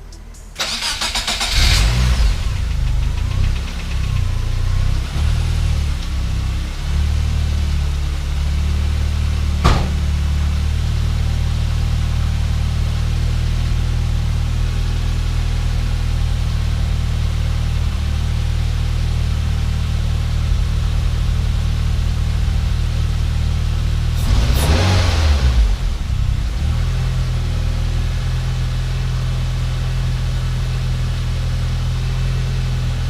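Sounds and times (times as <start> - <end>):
car engine idling: 0.0 - 33.0
engine revving: 0.6 - 3.8, 24.1 - 27.3.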